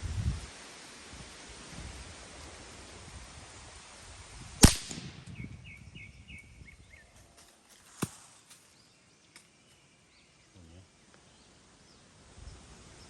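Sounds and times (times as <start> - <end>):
rifle shot crack: 4.6 - 5.3, 7.9 - 8.5
quiet crack: 7.2 - 9.8.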